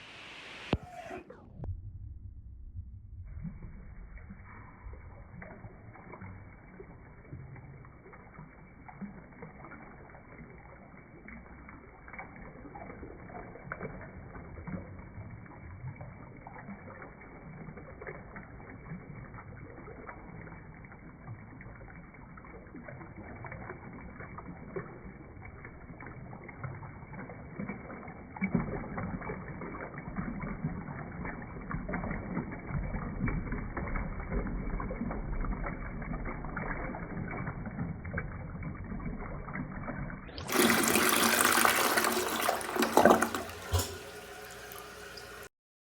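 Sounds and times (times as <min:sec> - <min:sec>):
toilet flushing: 0:25.2 - 0:45.5.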